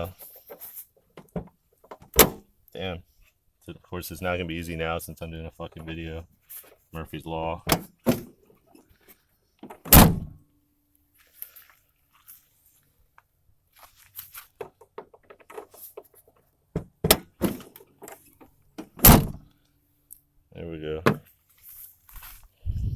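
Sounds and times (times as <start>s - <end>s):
loud thunks from door: 9.9s - 10.4s, 19.0s - 19.4s.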